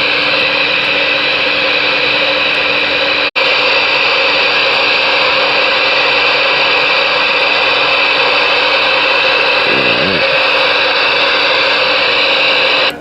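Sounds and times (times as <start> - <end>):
radio static hissing: 0.0 - 13.0
faint warbling tone: 9.6 - 10.6.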